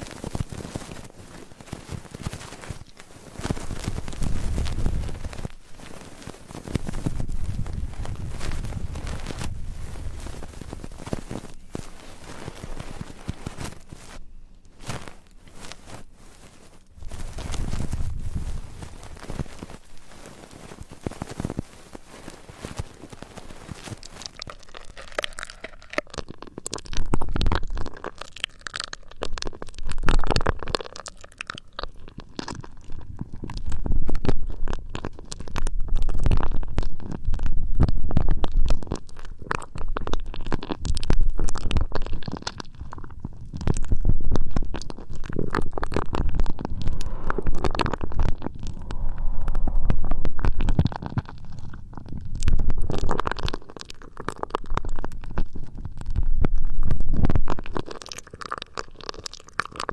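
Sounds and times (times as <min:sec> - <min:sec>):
hands rubbing a microphone: 0:00.0 - 0:24.5, 0:43.8 - 0:53.7.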